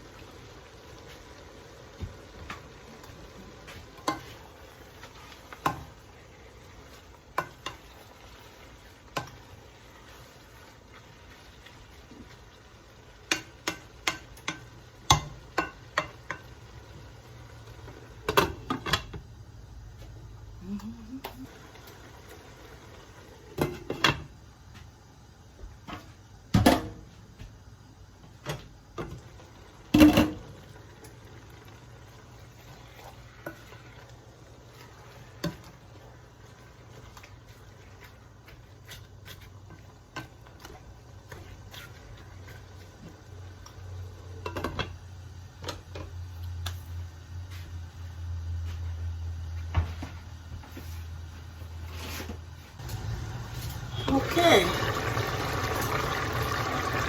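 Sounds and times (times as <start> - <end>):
pot bubbling: 0.0 - 27.2, 27.9 - 47.0, 51.2 - 57.0
low steady hum: 0.0 - 38.8.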